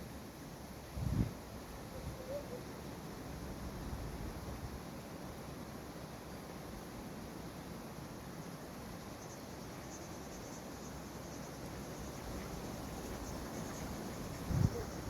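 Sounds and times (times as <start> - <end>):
wind rumble on microphone: 1.0 - 1.4, 14.2 - 15.0.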